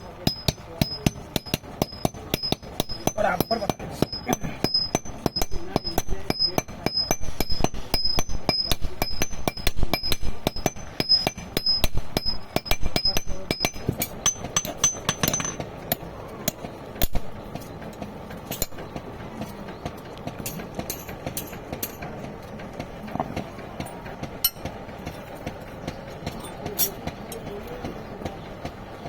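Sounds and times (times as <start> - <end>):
hammer ringing on anvil: 0.3 - 15.7.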